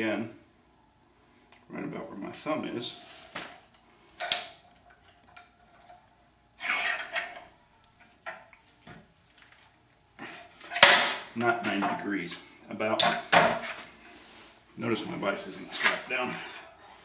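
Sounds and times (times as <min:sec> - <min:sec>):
steel bars clinking and rattling: 0:04.2 - 0:06.0, 0:06.6 - 0:07.5.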